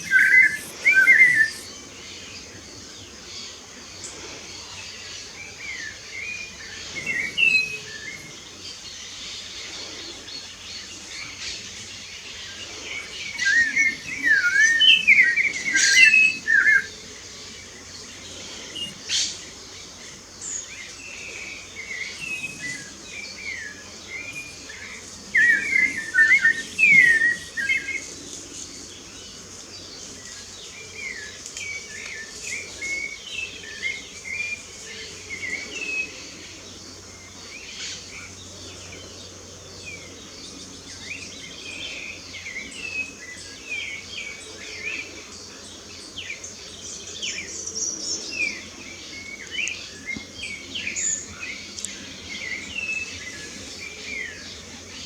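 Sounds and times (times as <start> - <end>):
faint high hiss: 0.0 - 35.9
songbirds singing: 0.0 - 55.0.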